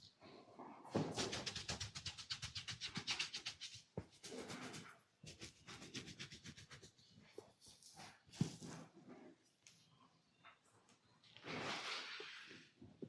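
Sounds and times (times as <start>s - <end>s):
rapid massage hand strokes: 1.1s - 7.0s.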